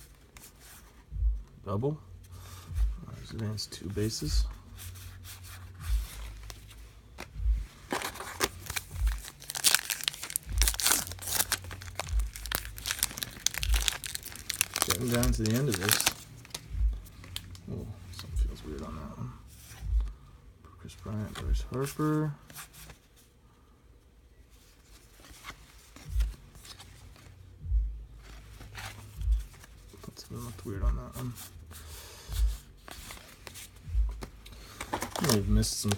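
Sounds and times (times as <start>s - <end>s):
low thumps: 1.1s - 1.5s, 7.2s - 7.8s, 8.5s - 17.2s, 18.2s - 18.7s, 19.8s - 20.2s, 27.6s - 28.0s, 29.2s - 29.5s, 33.9s - 34.4s
trading cards rustling and clicking: 3.2s - 20.1s, 24.7s - 27.4s, 28.2s - 31.6s, 32.4s - 35.9s
card pack crinkling: 7.8s - 18.3s, 34.7s - 35.9s.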